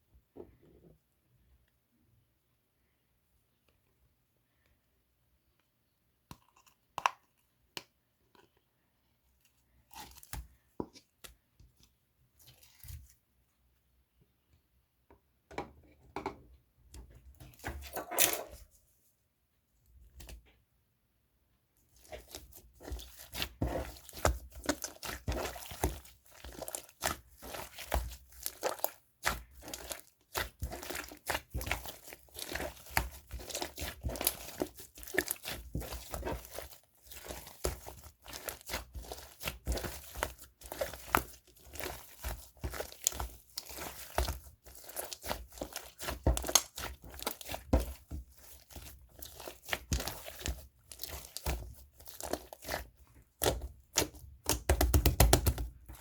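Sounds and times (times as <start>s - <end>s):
slime crackling and popping: 22.1s - 55.7s.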